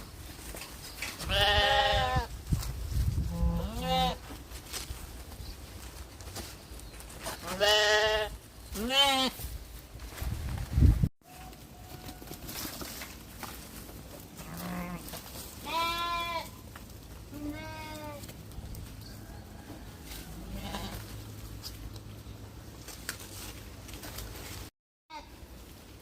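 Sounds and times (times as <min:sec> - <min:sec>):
sheep bleating: 0:01.3 - 0:02.3, 0:07.4 - 0:09.4, 0:14.4 - 0:16.6, 0:20.4 - 0:21.1.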